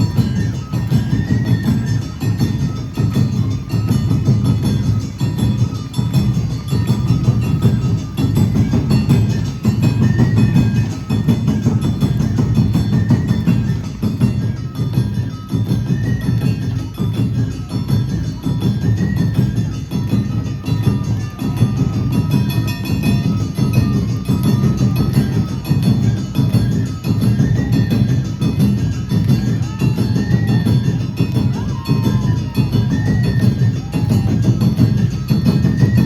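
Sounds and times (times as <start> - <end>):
taiko drums: 0.0 - 36.0
high flute notes: 16.0 - 36.0.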